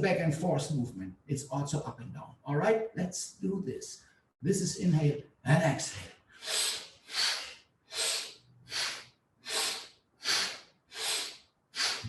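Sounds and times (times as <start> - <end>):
forceful nasal breathing: 6.4 - 12.0.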